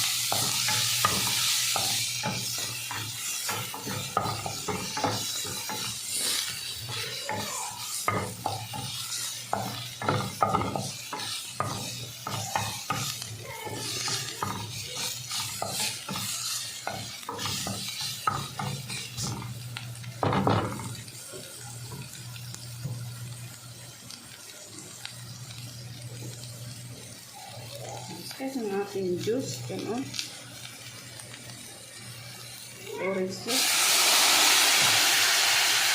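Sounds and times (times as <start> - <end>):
utensil scraping pan: 0.0 - 19.6
food sizzling in pan: 0.0 - 35.9.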